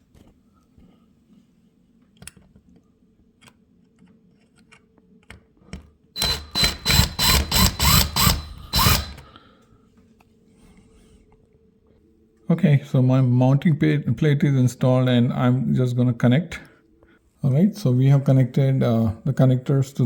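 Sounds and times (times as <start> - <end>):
power drill whining: 6.2 - 9.3.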